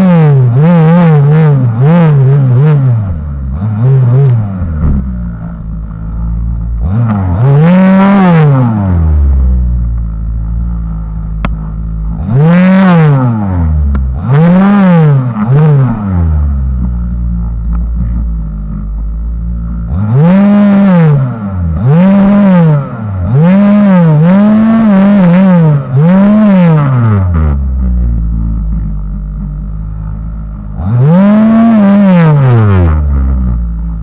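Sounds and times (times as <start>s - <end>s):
chainsaw idling and revving: 0.0s - 9.9s, 12.0s - 17.2s, 19.5s - 28.4s, 30.7s - 33.6s.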